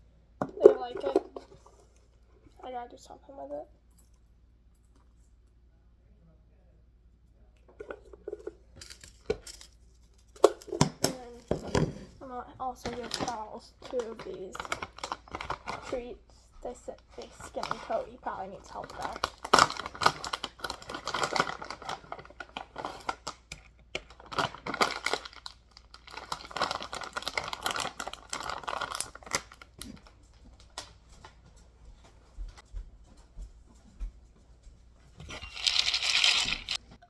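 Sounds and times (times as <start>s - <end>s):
plastic package crinkling: 12.8s - 16.2s, 16.9s - 31.0s, 35.4s - 36.8s.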